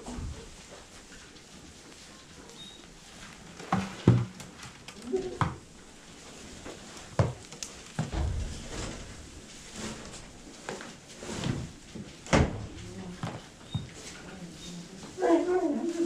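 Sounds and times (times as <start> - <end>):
sharp knocks and clunks: 8.0 - 10.8.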